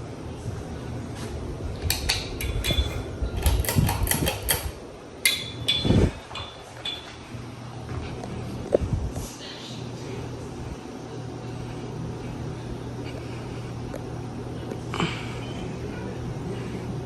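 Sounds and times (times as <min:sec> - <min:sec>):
ceiling fan motor humming: 0:00.0 - 0:17.0
metallic clicks and knocks: 0:01.8 - 0:07.2.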